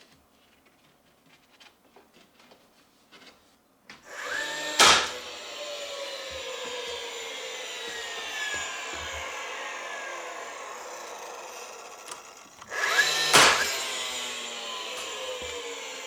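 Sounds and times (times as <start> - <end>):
electric power tool running: 4.0 - 16.0
tool biting into work: 4.1 - 16.0.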